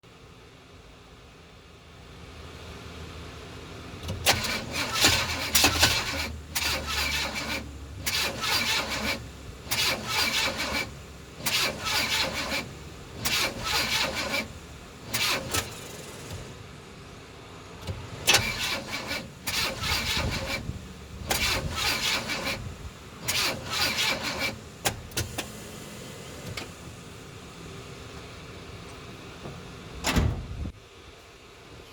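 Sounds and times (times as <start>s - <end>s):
car starter cranking engine: 4.0s - 16.7s, 17.8s - 28.2s
thump: 29.4s - 30.5s.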